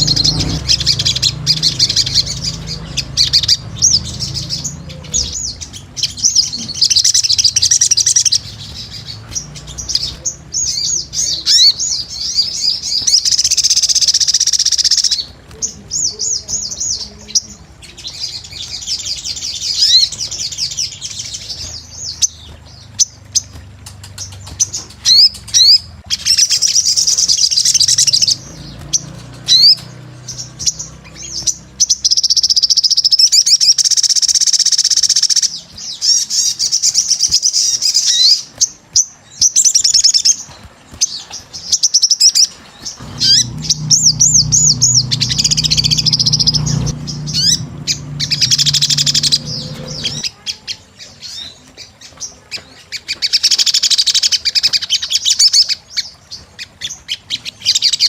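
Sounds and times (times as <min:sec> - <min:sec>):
low hum: 0:00.0 - 0:06.8, 0:42.8 - 0:50.2
sunbird singing: 0:00.0 - 0:50.8.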